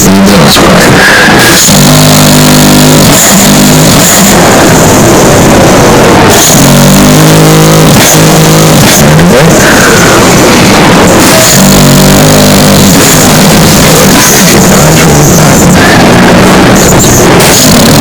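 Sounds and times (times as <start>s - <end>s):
distorted hiss: 0.0s - 18.0s
dog snoring distorted: 1.8s - 4.5s, 6.2s - 15.8s.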